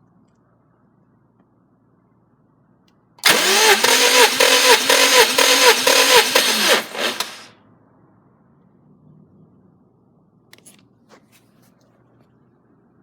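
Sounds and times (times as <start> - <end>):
starter motor cranking engine: 3.2 - 7.5.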